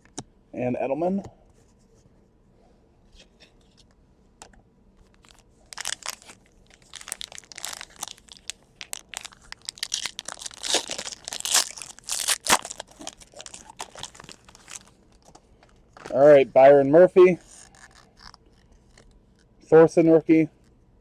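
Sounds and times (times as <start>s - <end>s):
foil wrapper tearing and crinkling: 5.1s - 15.2s, 17.4s - 19.1s.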